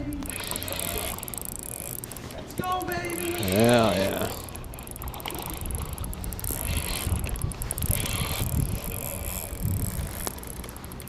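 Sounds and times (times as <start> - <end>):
fishing reel ticking: 0.0 - 11.0
wind rumble on microphone: 4.5 - 11.0.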